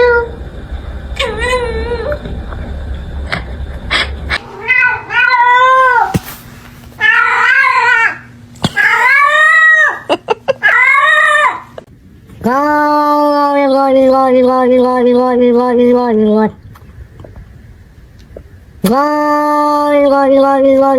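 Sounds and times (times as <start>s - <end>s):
cat meowing: 4.4s - 6.2s, 7.0s - 8.2s.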